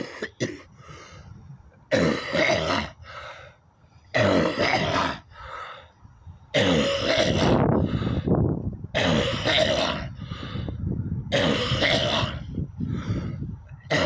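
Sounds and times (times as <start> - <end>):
man coughing: 0.0 - 0.7, 1.9 - 3.0, 4.2 - 5.2, 6.6 - 7.6, 9.0 - 10.1
man clearing throat: 1.9 - 3.0, 4.2 - 5.2, 6.6 - 7.6, 9.0 - 10.1, 11.3 - 12.5.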